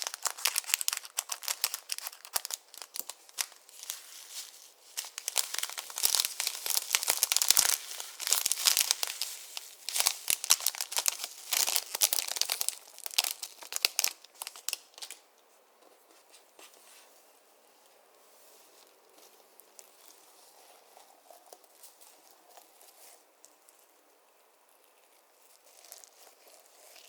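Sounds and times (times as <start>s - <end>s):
slime crackling and popping: 0.0s - 15.2s.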